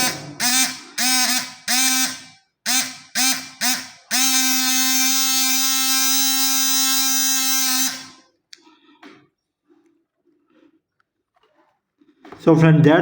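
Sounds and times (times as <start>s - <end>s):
water pump buzzing whine: 0.0s - 8.3s.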